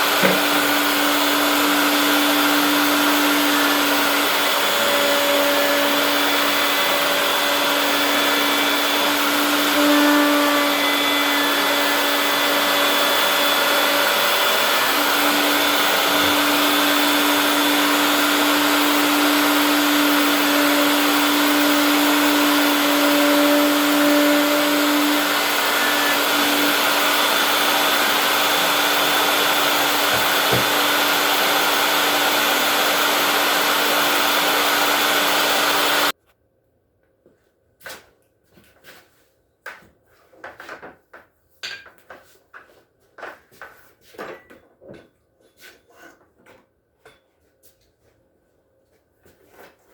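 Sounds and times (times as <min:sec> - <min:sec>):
router motor whine: 0:00.0 - 0:36.1.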